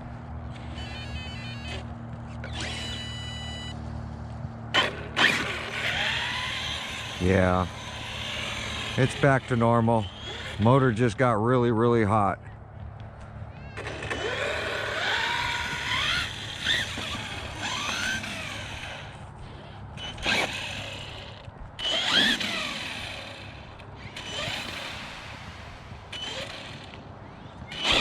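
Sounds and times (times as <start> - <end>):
electric motor whining: 0.5 - 11.3, 13.6 - 28.0.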